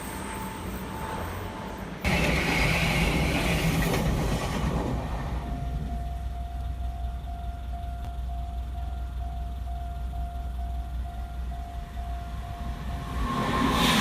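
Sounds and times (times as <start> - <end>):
train wheels running on rails: 0.0 - 14.0
level crossing warning bell: 5.1 - 13.2.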